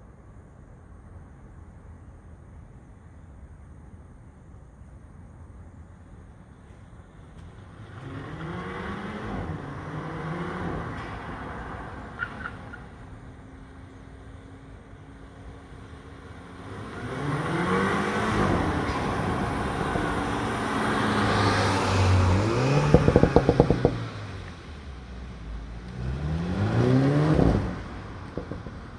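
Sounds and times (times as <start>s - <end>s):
car engine accelerating: 7.6s - 13.0s, 15.6s - 28.9s.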